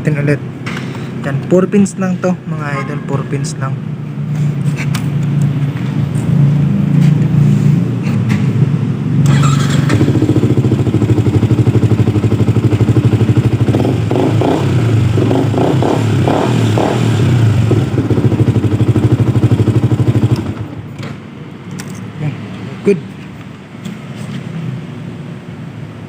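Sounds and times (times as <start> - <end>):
motorcycle engine idling: 9.3 - 15.7, 17.6 - 20.7.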